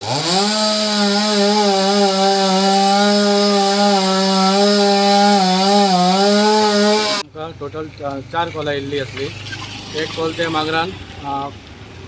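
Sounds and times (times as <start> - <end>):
chainsaw revving: 0.0 - 7.2.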